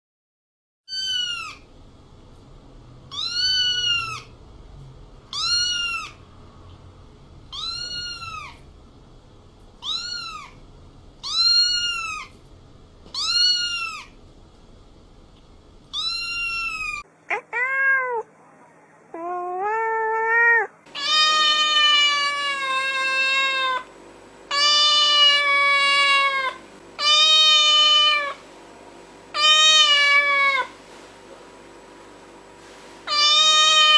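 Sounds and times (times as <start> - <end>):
cats meowing: 0.9 - 1.7, 3.1 - 4.3, 5.3 - 6.2, 7.5 - 8.7, 9.8 - 10.6, 11.2 - 12.4, 13.1 - 14.2, 15.9 - 18.3, 19.1 - 23.9, 24.5 - 28.4, 29.4 - 30.8, 33.1 - 33.9.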